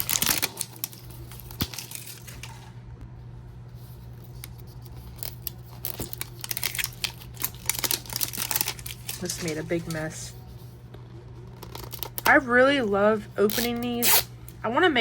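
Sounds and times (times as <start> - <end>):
wrappers crinkling and tearing: 0.0 - 2.7, 4.4 - 10.2, 11.4 - 12.3, 13.4 - 14.3.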